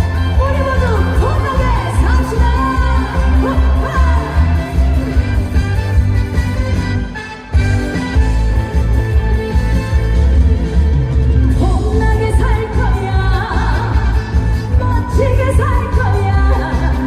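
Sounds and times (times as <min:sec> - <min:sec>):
woman singing with vibrato: 0:00.0 - 0:05.5, 0:11.5 - 0:17.0
band with heavy bass: 0:00.0 - 0:17.0.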